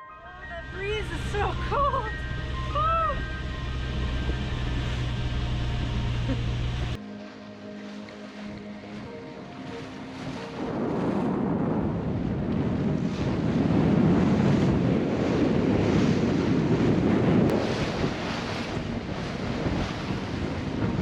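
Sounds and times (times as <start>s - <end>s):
choppy water rushing along hull: 0.1s - 21.0s
wind buffeting microphone: 9.7s - 21.0s.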